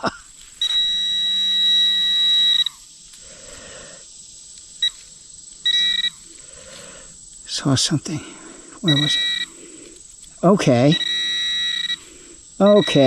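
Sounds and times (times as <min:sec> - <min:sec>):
rustling of dirt: 0:00.0 - 0:13.0
metal detector beeping: 0:00.6 - 0:02.9, 0:04.8 - 0:06.4, 0:08.8 - 0:13.0.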